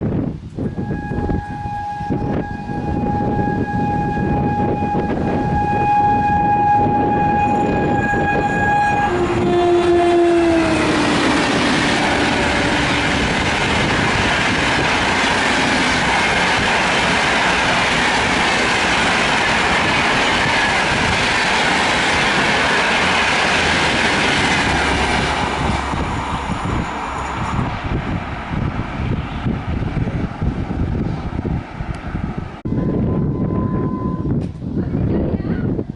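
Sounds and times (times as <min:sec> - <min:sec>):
locomotive horn: 0:00.6 - 0:26.6, 0:32.7 - 0:34.4
train coaches rushing past: 0:00.9 - 0:34.6.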